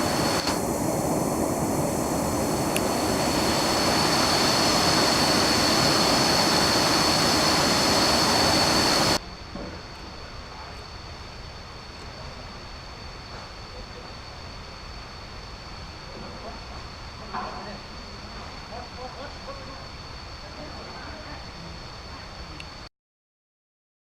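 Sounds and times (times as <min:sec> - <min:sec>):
waterfall roaring: 0:00.0 - 0:09.2
high-pitched whine: 0:00.0 - 0:22.9.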